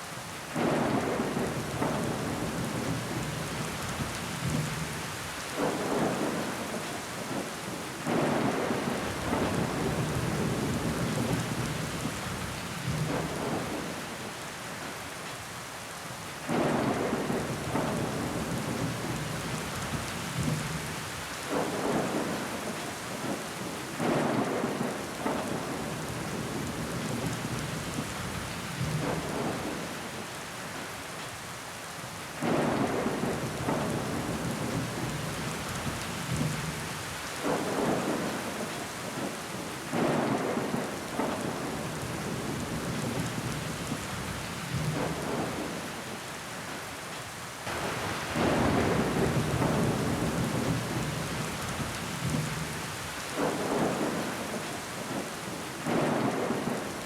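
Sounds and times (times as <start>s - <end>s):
rain pattering on window glass: 47.6s - 57.0s.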